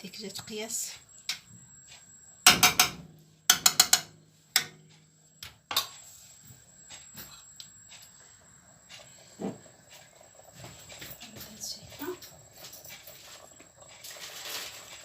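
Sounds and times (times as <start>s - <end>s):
utensils knocking on cookware: 2.4s - 5.9s.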